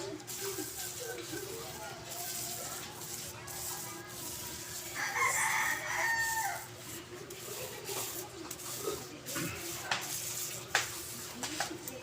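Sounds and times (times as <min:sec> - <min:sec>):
rooster crowing: 0:05.0 - 0:06.7.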